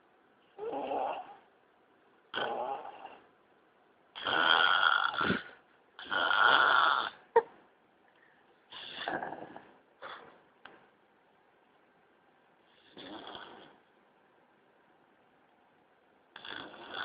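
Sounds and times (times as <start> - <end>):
person snoring: 4.2 - 7.2, 12.8 - 13.8, 16.3 - 17.0.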